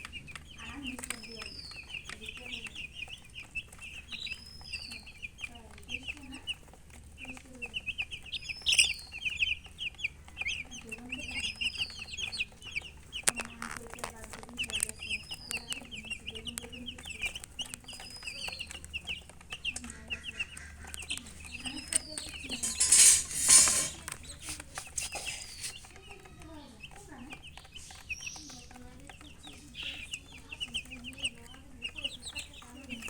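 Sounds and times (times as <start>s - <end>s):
chicks peeping: 0.0s - 33.0s
hen clucking softly: 4.8s - 26.3s.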